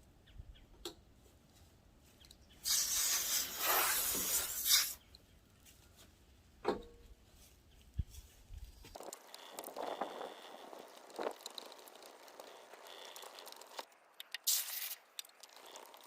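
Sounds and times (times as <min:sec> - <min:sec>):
wet-sanding plastic hiss: 0:02.6 - 0:05.0, 0:14.4 - 0:16.0.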